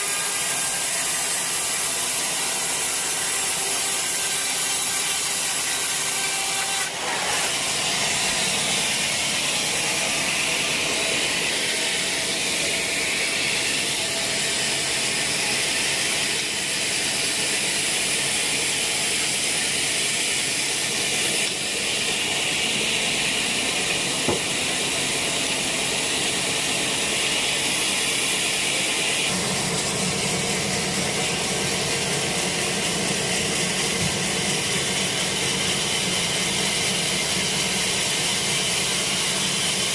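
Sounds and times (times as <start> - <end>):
saw ripping through log: 0.0 - 17.7.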